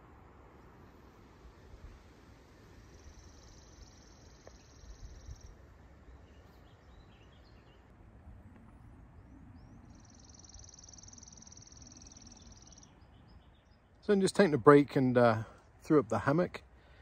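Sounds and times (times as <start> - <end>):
faint low rumble: 0.0 - 14.1.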